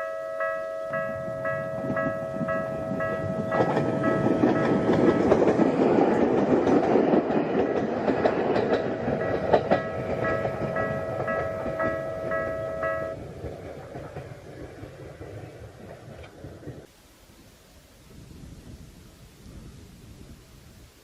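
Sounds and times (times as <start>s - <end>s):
crossing warning bell dinging: 0.0s - 6.5s, 7.3s - 13.2s
electric train passing: 0.0s - 16.9s
wheels clicking over rail joints: 0.9s - 16.9s.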